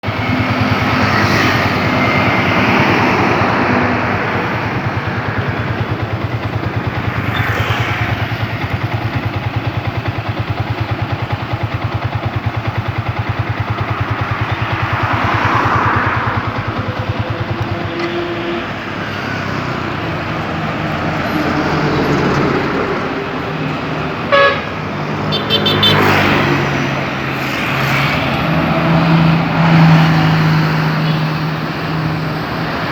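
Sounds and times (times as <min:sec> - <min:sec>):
engine pulsing: 0:00.0 - 0:32.9
vehicles passing: 0:00.0 - 0:32.9
bus musical horn: 0:17.6 - 0:19.2, 0:24.1 - 0:26.4.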